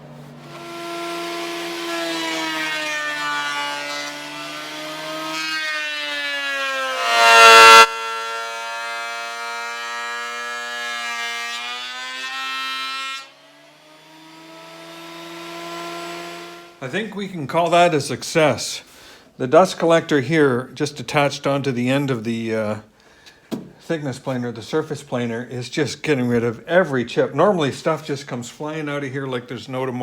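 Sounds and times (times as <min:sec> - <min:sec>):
planer whining: 0:00.0 - 0:16.8
harsh board cutting noise: 0:00.3 - 0:16.8.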